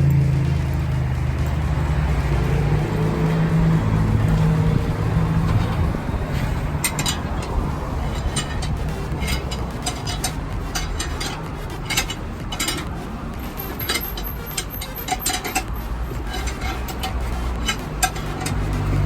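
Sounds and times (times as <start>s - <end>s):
low rumble of road traffic: 0.0s - 19.0s
metallic clinks of hand tools: 6.8s - 19.0s.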